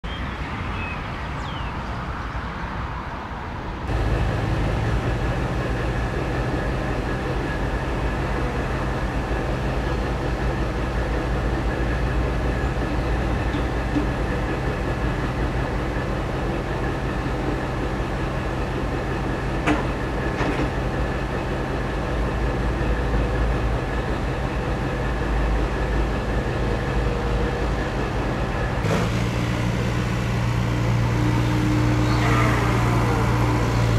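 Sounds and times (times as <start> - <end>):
diesel engine idling: 3.9 - 33.9.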